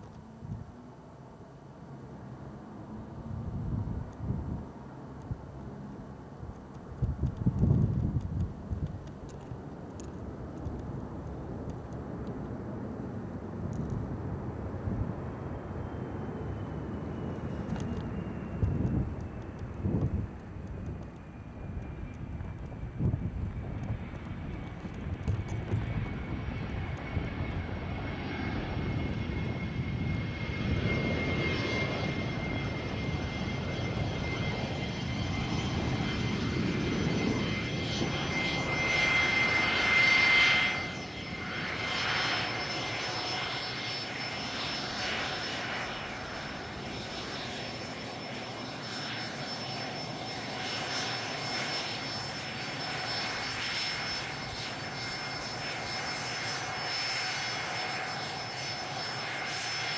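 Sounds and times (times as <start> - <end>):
aircraft engine noise: 0.0 - 59.9
thin whine: 15.4 - 59.9.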